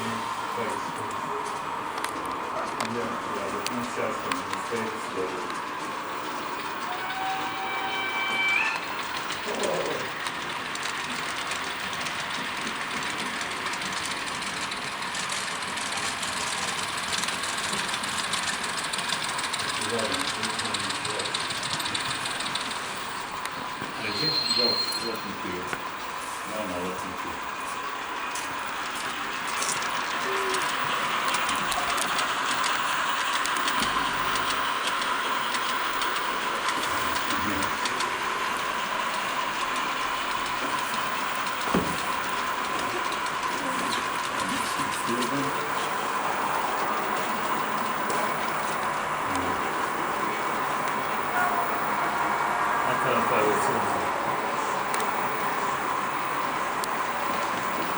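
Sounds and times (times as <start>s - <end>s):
model trains hissing: 0.0s - 57.9s
wheels clicking over track: 0.0s - 57.9s
brief rising high tone: 6.8s - 8.9s.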